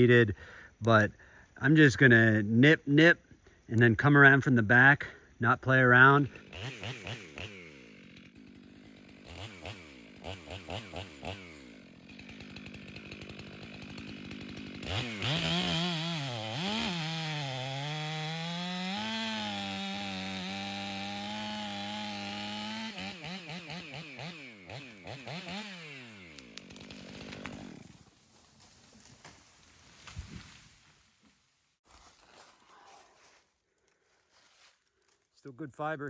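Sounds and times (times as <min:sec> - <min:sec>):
chainsaw revving: 0:06.2 - 0:28.1
chainsaw cutting into wood: 0:06.2 - 0:30.6.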